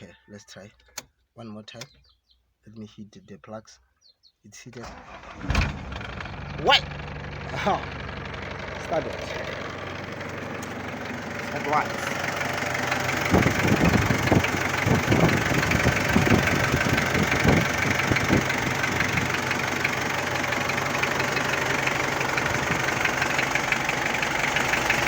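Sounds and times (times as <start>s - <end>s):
diesel engine running unevenly: 5.3s - 25.0s.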